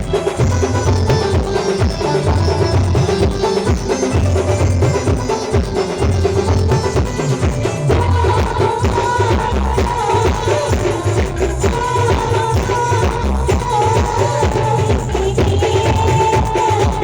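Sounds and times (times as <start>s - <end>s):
wavering melody line: 0.0s - 12.4s
loud drum beat: 0.0s - 17.0s.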